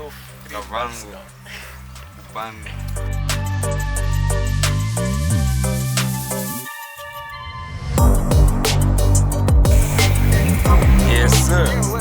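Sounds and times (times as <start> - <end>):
heavy sustained bass: 8.0 - 12.0
hi-hat ticks: 8.0 - 12.0.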